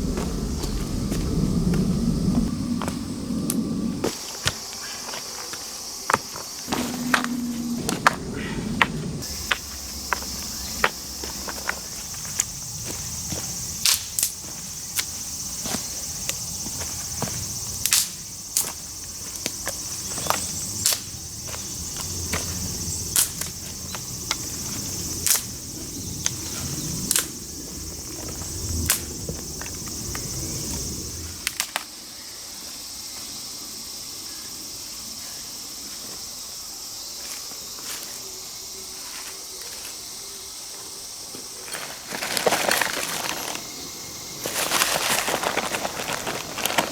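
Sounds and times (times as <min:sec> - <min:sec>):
low rumble: 0:00.0 - 0:04.1, 0:06.7 - 0:13.8
high insect chirring: 0:00.0 - 0:46.9
sharp cracks and snaps: 0:13.8 - 0:14.4, 0:17.8 - 0:18.8, 0:20.8 - 0:21.1, 0:23.1 - 0:23.6, 0:25.2 - 0:25.6, 0:27.1 - 0:27.4, 0:31.4 - 0:31.9.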